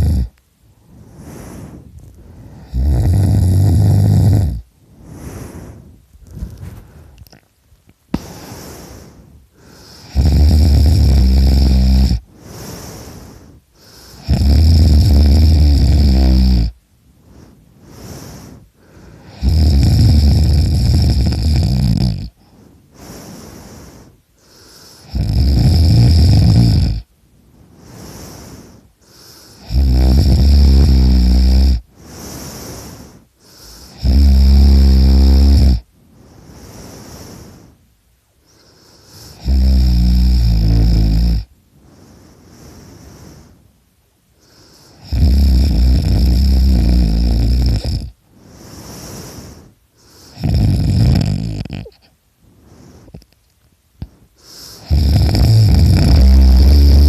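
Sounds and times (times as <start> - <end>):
man snoring loudly: 0.0 - 0.4, 2.5 - 4.7, 9.8 - 13.2, 14.0 - 16.8, 19.2 - 22.4, 25.0 - 27.1, 27.9 - 35.9, 39.2 - 41.5, 44.9 - 49.6, 50.3 - 52.0, 54.5 - 57.0
quiet breathing: 0.0 - 57.0.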